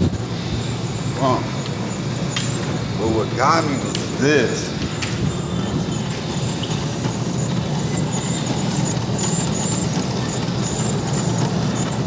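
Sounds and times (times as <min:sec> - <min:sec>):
faint high whine: 0:00.0 - 0:09.8
laundry machines rumbling: 0:00.0 - 0:12.0.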